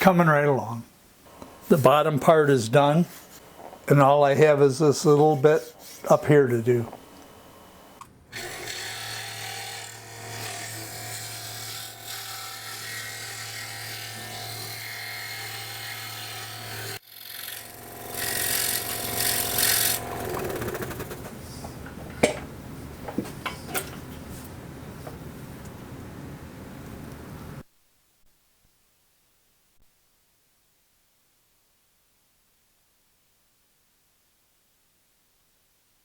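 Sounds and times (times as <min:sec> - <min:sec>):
scroll saw cutting wood: 0:01.8 - 0:21.7.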